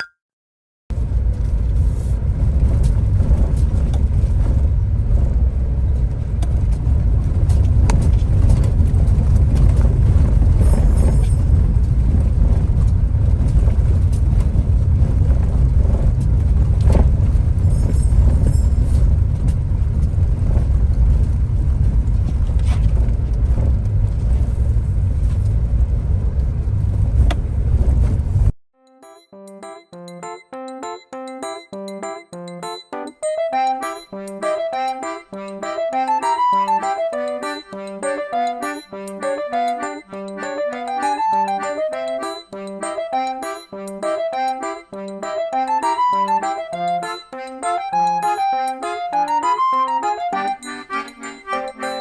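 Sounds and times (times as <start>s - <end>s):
car road and engine rumble: 0.9s - 28.5s.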